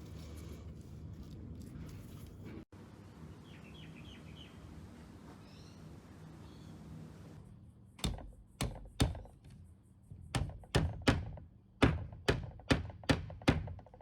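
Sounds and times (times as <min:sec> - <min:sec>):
sharp knocks: 0:08.0 - 0:09.5, 0:10.3 - 0:14.0.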